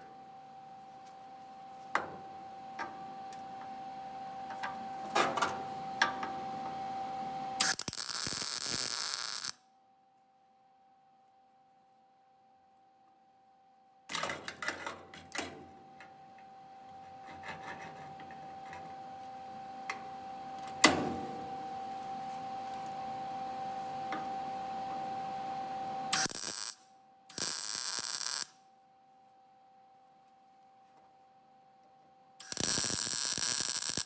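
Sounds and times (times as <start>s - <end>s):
faint high hum: 0.0s - 8.0s, 9.6s - 27.4s
welding crackling hiss with pops: 7.6s - 9.6s, 26.1s - 28.6s, 32.4s - 34.0s.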